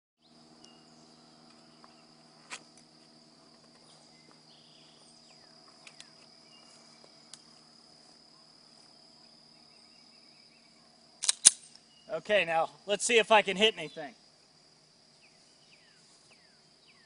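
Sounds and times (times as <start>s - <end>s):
crickets trilling: 0.2s - 17.0s
short sharp clicks: 11.2s - 11.8s.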